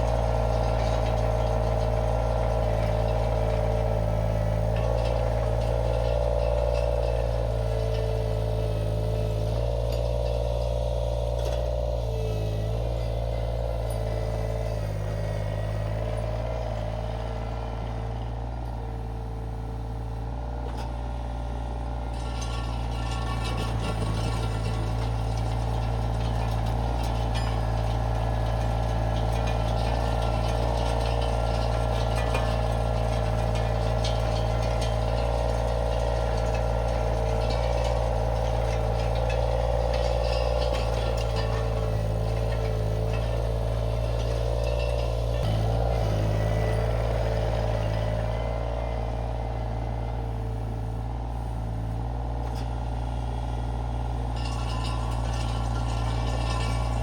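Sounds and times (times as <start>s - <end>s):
rake clattering through gravel: 0.0s - 10.7s, 22.1s - 48.7s, 54.0s - 57.0s
skid steer engine running: 0.0s - 57.0s.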